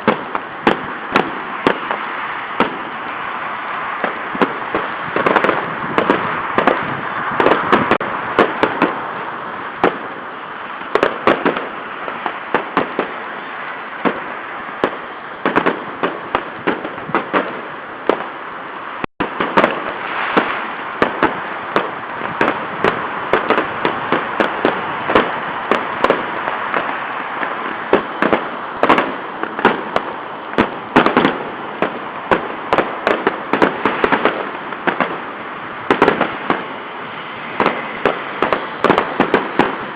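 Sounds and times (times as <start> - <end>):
fireworks bangs and crackles: 0.0 - 39.9
steady background noise: 0.0 - 39.9.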